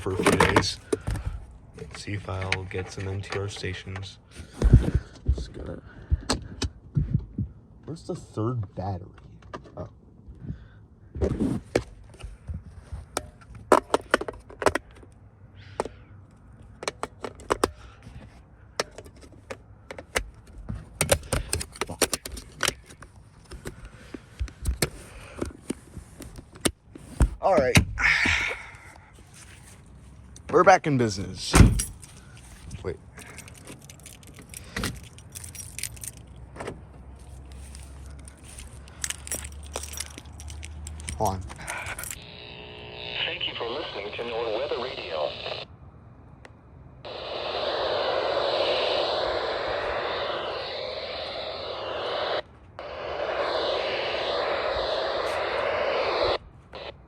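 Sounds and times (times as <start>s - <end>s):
radio being handled clicks: 16.8s - 17.8s, 18.8s - 26.8s
steady low hum: 41.1s - 57.0s.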